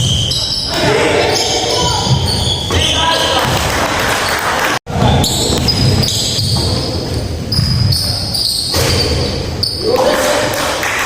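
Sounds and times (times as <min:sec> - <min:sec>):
voices echoing in a gym: 0:00.0 - 0:11.0
basketball bouncing: 0:01.8 - 0:04.0, 0:04.9 - 0:08.1.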